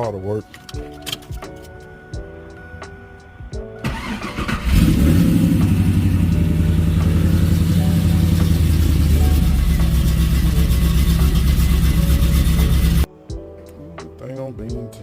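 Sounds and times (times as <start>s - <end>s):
starter cranking engine: 3.8s - 6.9s
car engine running loud: 4.7s - 13.1s.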